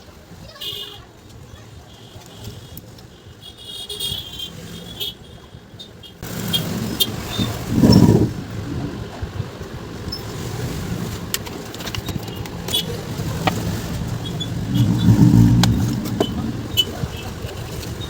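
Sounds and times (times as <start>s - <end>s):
motor vehicle passing: 6.2s - 9.2s, 12.4s - 18.0s.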